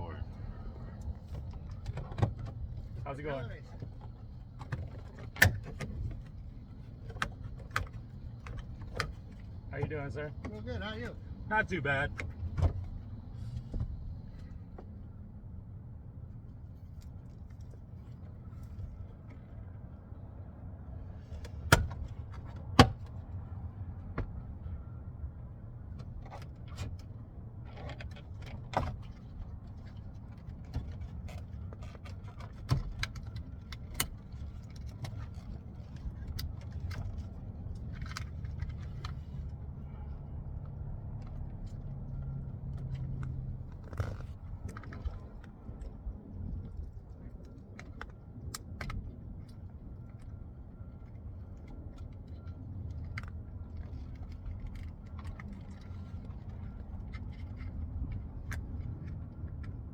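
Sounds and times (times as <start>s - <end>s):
steady low hum: 0.0s - 27.6s.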